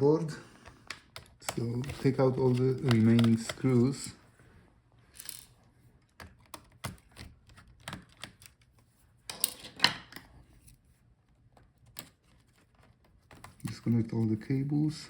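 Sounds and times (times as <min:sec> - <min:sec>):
screwdriver clicks and taps: 0:00.9 - 0:03.7.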